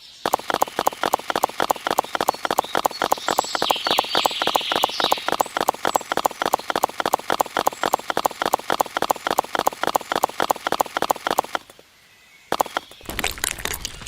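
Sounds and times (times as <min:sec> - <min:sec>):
clip-clop clopping: 0:00.3 - 0:11.8.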